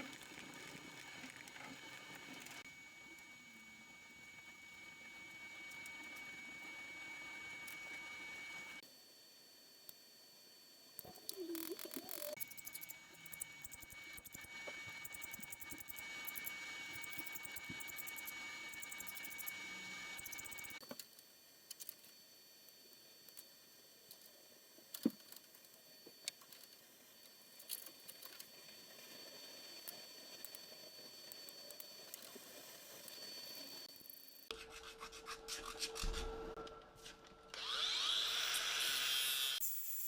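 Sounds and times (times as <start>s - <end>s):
steady hum: 11.1s - 20.8s
loud power tool noise: 37.5s - 40.0s.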